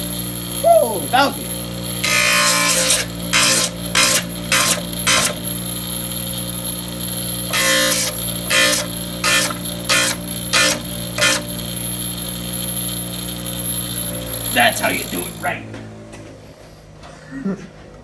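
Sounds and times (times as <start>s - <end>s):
sharp percussive hits: 2.0s - 5.4s, 7.5s - 11.5s.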